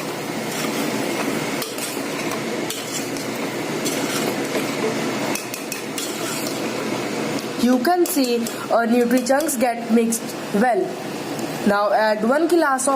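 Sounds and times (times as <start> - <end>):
spoon scraping metal pot: 0.4 - 6.7.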